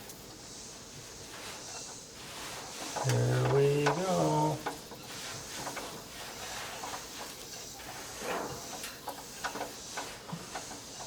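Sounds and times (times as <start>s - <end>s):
faint clicks and knocks: 6.8s - 11.0s.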